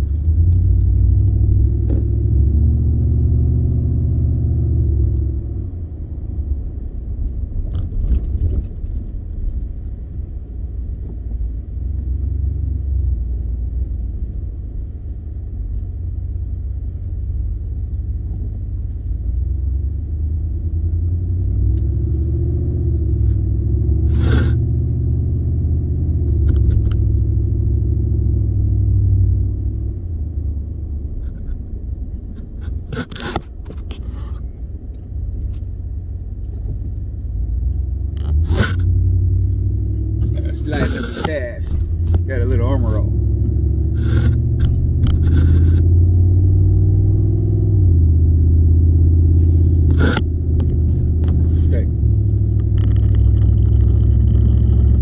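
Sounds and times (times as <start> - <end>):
engine and road rumble: 0.0 - 55.0.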